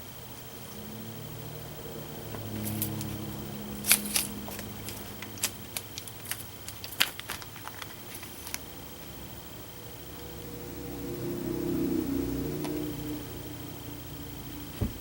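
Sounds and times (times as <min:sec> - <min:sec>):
faint steady hum: 0:00.0 - 0:15.0
thin high whine: 0:00.0 - 0:15.0
small hard objects clicking: 0:03.8 - 0:08.7.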